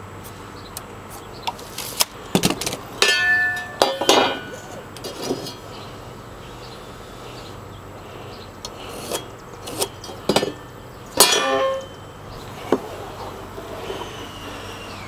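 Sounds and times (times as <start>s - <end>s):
short falling squeak: 13.8s - 15.0s.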